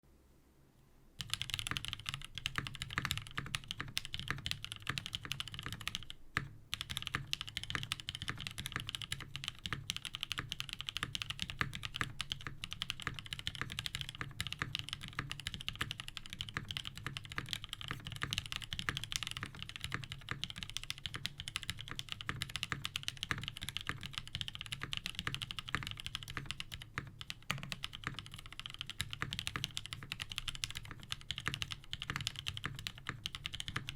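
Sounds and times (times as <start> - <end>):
mechanical keyboard typing: 1.2 - 33.9.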